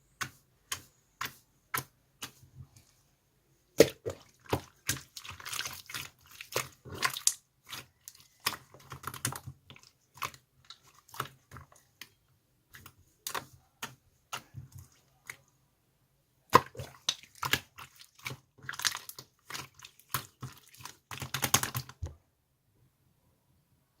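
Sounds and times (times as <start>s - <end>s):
slime squishing with bubble pops: 0.1s - 2.8s, 3.7s - 15.5s, 16.4s - 22.1s.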